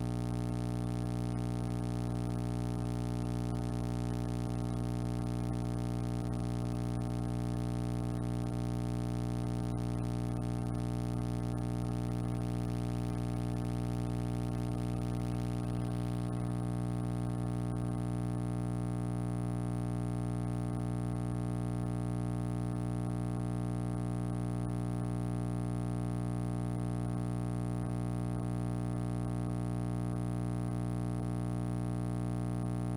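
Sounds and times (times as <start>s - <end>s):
electrical buzzing hum: 0.0s - 32.9s.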